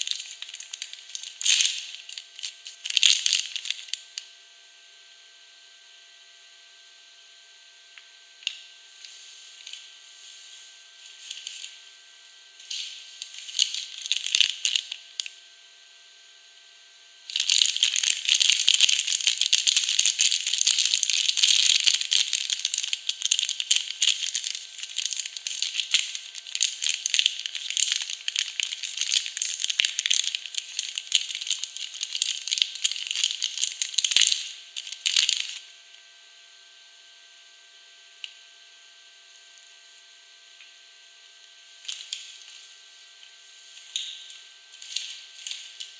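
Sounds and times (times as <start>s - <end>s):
soap packaging crinkling: 0.0s - 4.2s, 11.1s - 11.8s, 12.6s - 15.3s, 17.3s - 35.6s, 41.8s - 45.9s.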